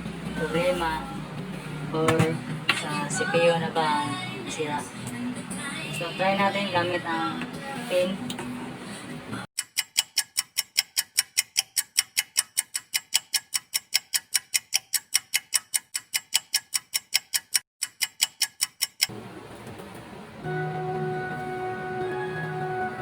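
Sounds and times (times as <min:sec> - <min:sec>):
rapid clock-like ticking: 0:09.6 - 0:19.1.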